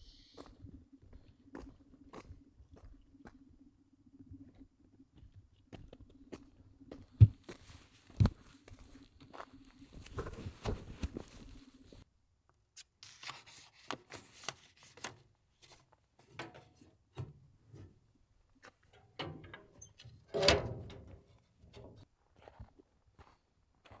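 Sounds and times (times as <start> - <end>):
footsteps: 5.2 - 12.0, 18.6 - 24.0
clothing and gear rustling: 7.2 - 12.0.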